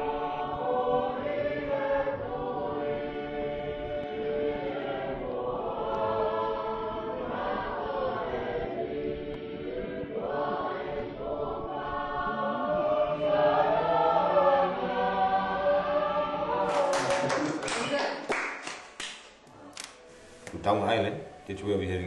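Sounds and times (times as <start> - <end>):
choir singing in harmony: 0.0 - 17.6.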